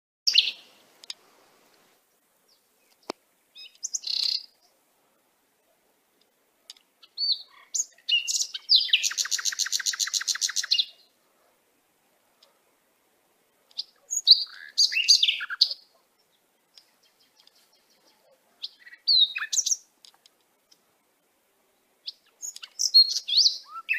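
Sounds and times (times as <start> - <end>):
birds chirping: 0.3 - 1.4, 2.4 - 23.9
rapid bird trill: 7.0 - 11.1.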